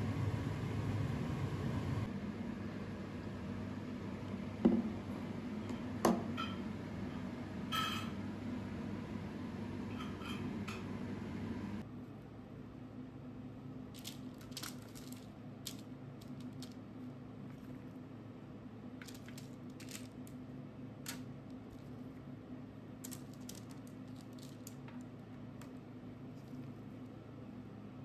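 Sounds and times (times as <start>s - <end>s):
steady low hum: 0.0s - 12.0s
small objects clicking and tapping: 23.0s - 25.8s.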